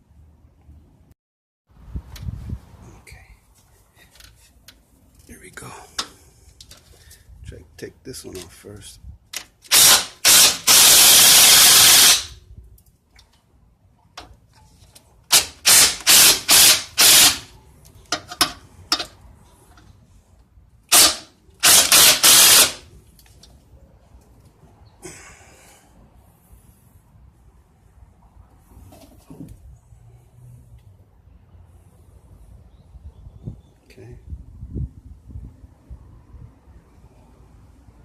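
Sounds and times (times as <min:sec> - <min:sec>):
impact wrench bursts: 0:09.7 - 0:12.4, 0:15.3 - 0:17.5, 0:20.9 - 0:22.9.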